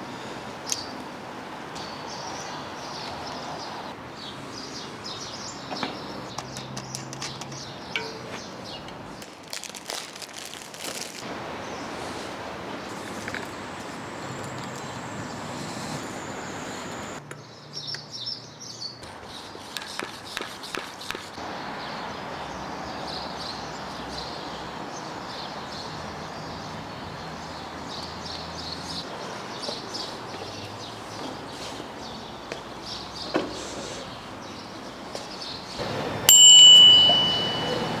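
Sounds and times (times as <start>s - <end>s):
steady background noise: 0.0s - 17.7s, 21.3s - 38.0s
bicycle bell ding: 35.8s - 38.0s
faint high chirps: 36.3s - 38.0s.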